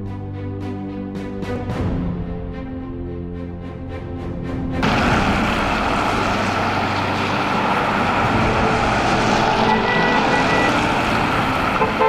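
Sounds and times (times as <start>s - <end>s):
background music: 0.0s - 12.0s
road noise from passing vehicles: 4.6s - 12.0s.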